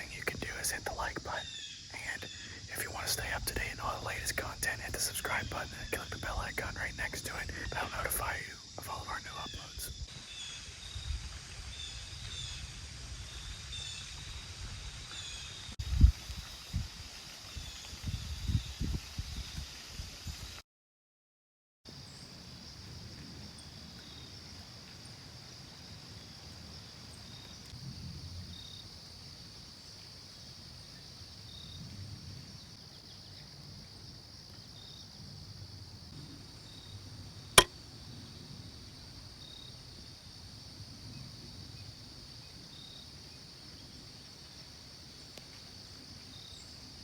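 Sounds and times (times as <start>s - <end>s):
high-pitched insect trill: 0.0s - 16.8s
low rumble of breeze: 0.0s - 20.5s, 22.1s - 44.2s.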